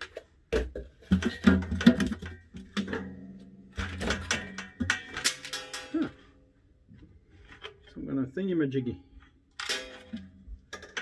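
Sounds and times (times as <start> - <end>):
plastic parts clicking and rattling: 0.0 - 6.1, 9.2 - 11.0.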